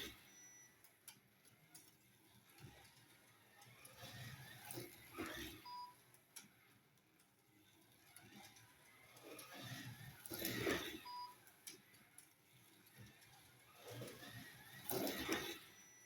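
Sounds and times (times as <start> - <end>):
slot car lapping plastic track: 1.6 - 5.9, 7.5 - 16.0.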